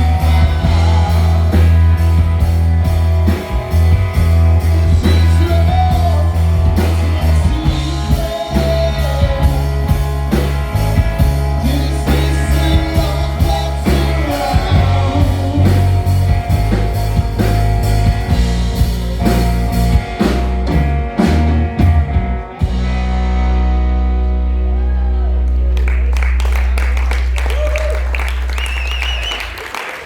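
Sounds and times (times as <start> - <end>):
drum beats: 0.0 - 23.0
electric guitar: 0.0 - 29.1
heavy bass line: 0.0 - 29.2.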